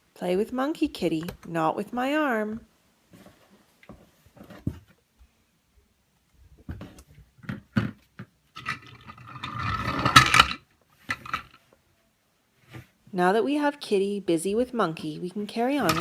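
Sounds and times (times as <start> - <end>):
cat playing with toys: 15.8 - 16.0.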